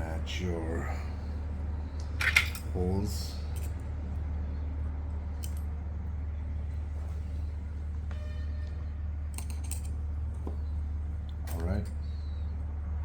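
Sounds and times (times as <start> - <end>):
steady low hum: 0.0 - 13.0
clicks of small parts handled: 2.0 - 2.7, 5.4 - 5.6, 9.4 - 9.9.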